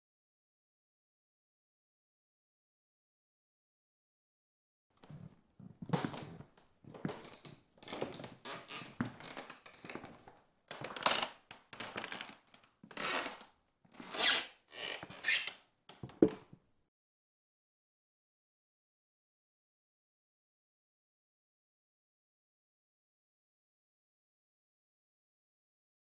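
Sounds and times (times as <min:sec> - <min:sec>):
drawn-out creaks: 0:14.7 - 0:15.5.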